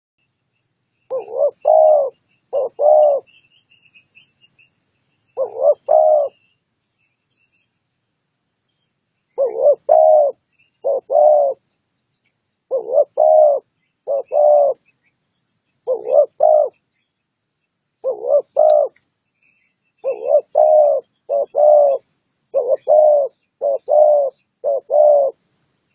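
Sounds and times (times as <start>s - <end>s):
small birds chirping: 0.2s - 25.9s
dove cooing: 1.1s - 3.3s, 5.4s - 6.4s, 9.4s - 11.6s, 12.7s - 14.9s, 15.8s - 16.8s, 18.0s - 19.0s, 20.0s - 25.4s.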